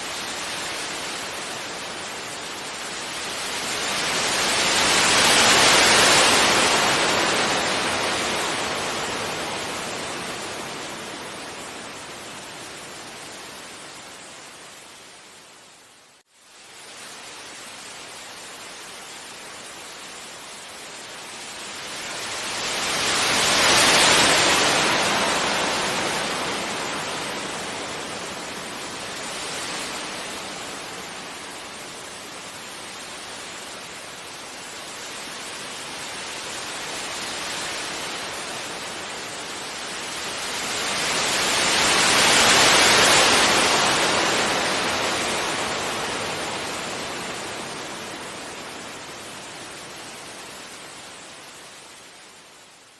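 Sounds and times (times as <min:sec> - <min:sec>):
sea waves breaking on a beach: 0:00.0 - 0:52.9.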